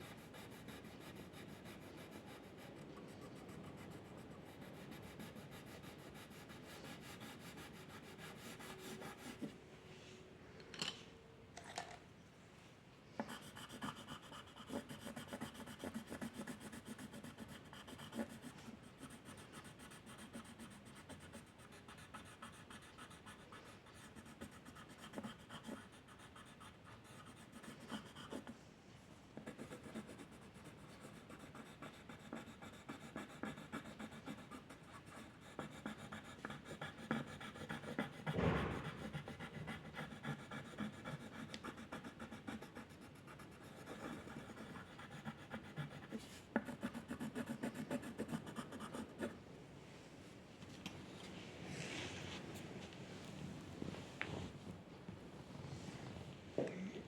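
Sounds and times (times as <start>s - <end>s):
drawing scratching on paper: 0.0s - 9.6s, 13.2s - 28.5s, 29.4s - 49.4s
thump: 38.3s - 39.0s.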